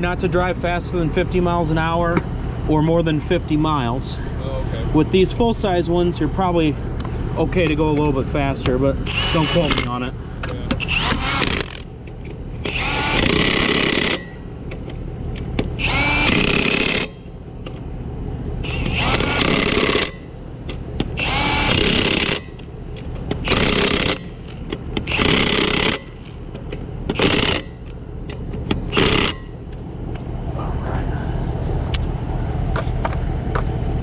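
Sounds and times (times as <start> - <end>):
impact wrench bursts: 9.0 - 10.0, 10.8 - 11.9, 12.6 - 14.5, 15.8 - 17.3, 18.6 - 20.3, 21.0 - 22.7, 23.4 - 28.0, 28.8 - 29.6.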